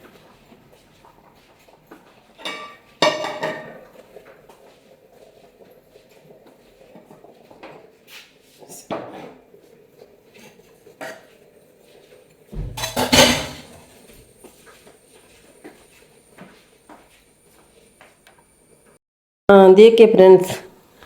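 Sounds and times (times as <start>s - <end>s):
dishes and utensils clinking: 2.4s - 4.0s, 12.6s - 14.2s
dishes clattering: 2.4s - 4.0s, 12.6s - 14.2s.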